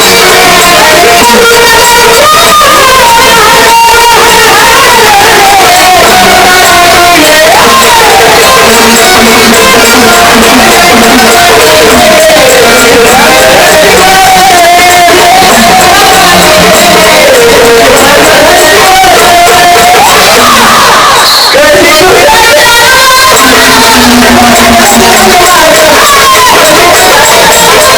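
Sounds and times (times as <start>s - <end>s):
crowd noise: 0.0s - 27.9s
woman singing high melody: 0.0s - 27.9s.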